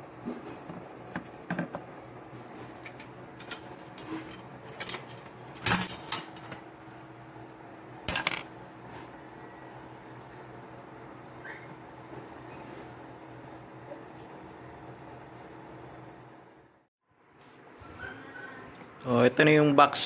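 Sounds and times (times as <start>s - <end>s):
tools and parts clinking: 2.8s - 6.6s, 8.1s - 8.5s.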